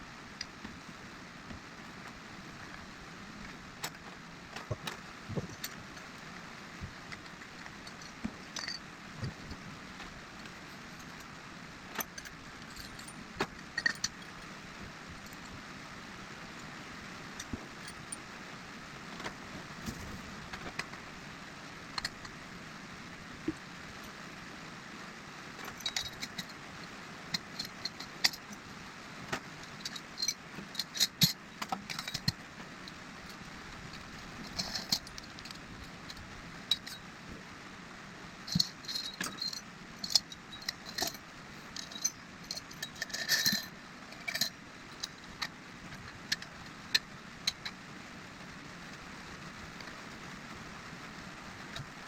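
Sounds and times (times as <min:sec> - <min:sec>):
metal tools clinking: 0:07.2 - 0:09.6, 0:12.0 - 0:14.5, 0:25.6 - 0:26.6, 0:29.6 - 0:32.4, 0:33.3 - 0:37.0, 0:38.5 - 0:46.4.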